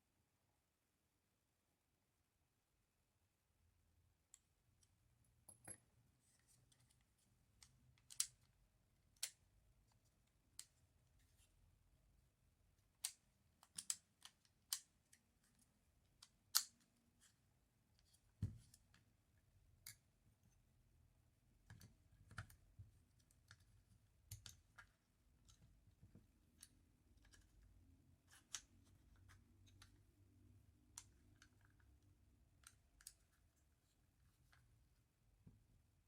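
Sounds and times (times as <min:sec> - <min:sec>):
small pistol parts clicking: 0:16.2 - 0:16.8.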